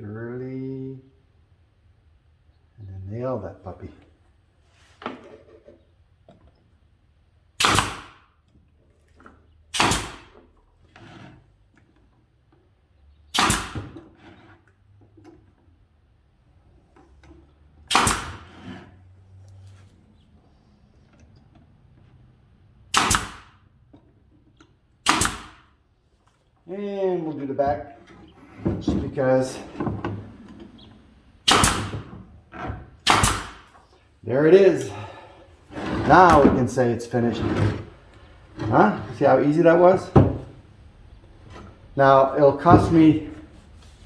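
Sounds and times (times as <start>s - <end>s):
nail gun shots: 7.6s - 8.3s, 9.7s - 10.4s, 13.3s - 14.1s, 17.9s - 18.7s, 22.9s - 23.6s, 25.0s - 25.7s, 31.4s - 32.2s, 33.0s - 33.8s
wood boards knocking: 27.7s - 33.4s, 35.0s - 43.6s.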